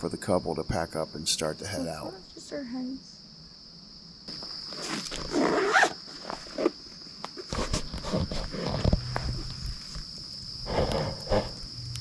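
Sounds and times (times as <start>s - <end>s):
crickets chirping: 0.0s - 12.0s
camping gear rustling and scraping: 4.3s - 11.8s.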